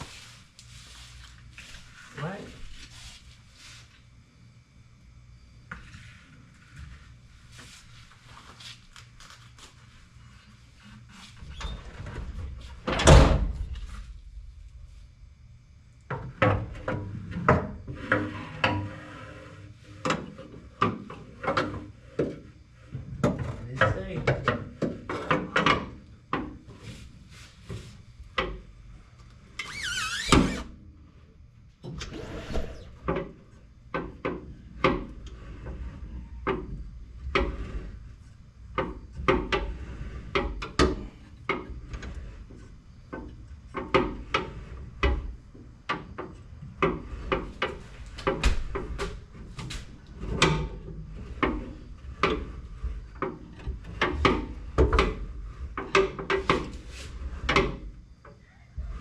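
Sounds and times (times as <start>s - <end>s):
high squeal of rubbing: 29.6s - 30.7s, 32.1s - 33.0s.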